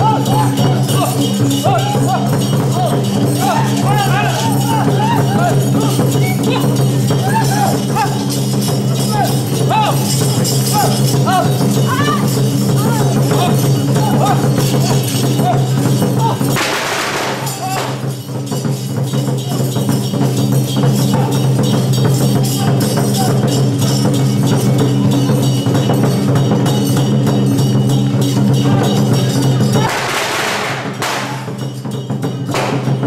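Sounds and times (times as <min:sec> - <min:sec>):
temple drum gongs and cymbals: 0:00.0 - 0:33.0
cymbal crash: 0:14.6 - 0:18.9, 0:29.8 - 0:33.0.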